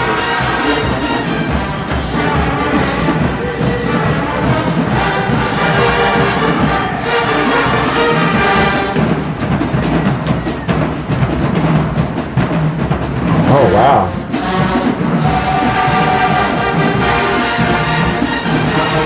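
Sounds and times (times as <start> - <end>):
brass chords: 0.0 - 9.1, 13.2 - 19.0
drumline quick strokes: 0.5 - 19.0.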